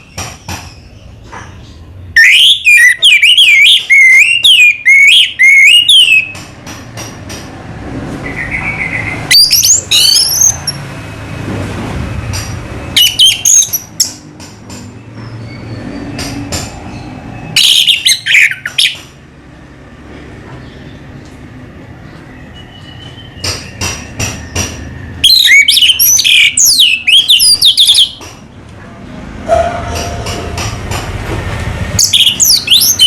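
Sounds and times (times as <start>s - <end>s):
thrush singing whistled notes: 2.2s - 6.4s, 8.2s - 10.8s, 12.9s - 14.2s, 16.9s - 19.0s, 22.3s - 28.2s, 32.0s - 33.0s.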